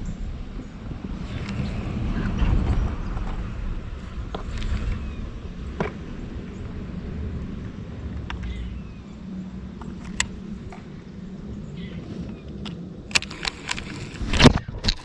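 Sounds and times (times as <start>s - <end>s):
faint hum: 0.0s - 15.0s
low steady rumble: 0.0s - 15.0s
gear clicks and knocks: 12.5s - 15.0s.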